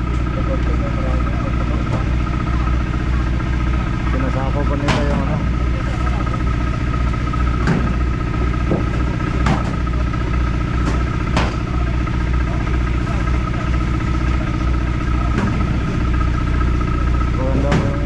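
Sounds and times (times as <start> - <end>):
engine running with whine: 0.0 - 18.0
sharp knocks and clatters: 4.8 - 5.5, 7.6 - 9.9, 10.8 - 11.8.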